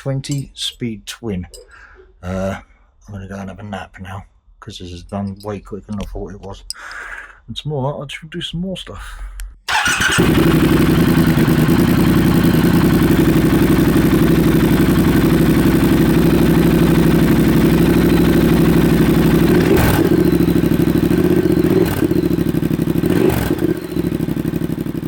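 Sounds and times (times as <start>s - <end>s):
motorcycle engine running: 9.7s - 25.0s.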